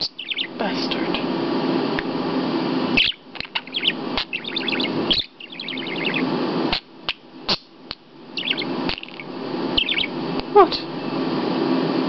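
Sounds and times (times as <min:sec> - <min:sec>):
budgerigar warbling: 0:00.0 - 0:00.6, 0:03.0 - 0:10.2.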